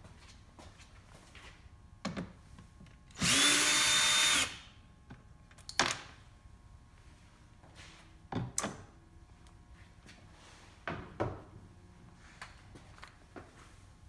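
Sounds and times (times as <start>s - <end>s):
cordless drill whining: 3.2s - 4.6s.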